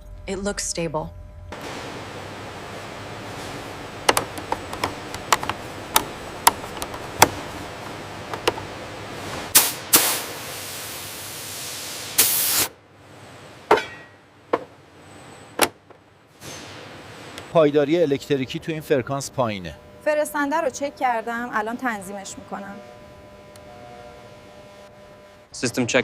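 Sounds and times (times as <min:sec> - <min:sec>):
short bursts of hissing: 0:09.3 - 0:12.7.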